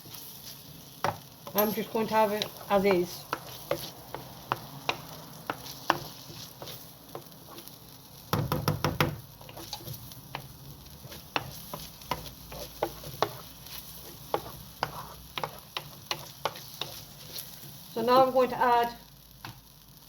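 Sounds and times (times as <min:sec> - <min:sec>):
onions sizzling in a frying pan: 0:00.0 - 0:20.0
stirring knocks against pan: 0:08.3 - 0:09.8.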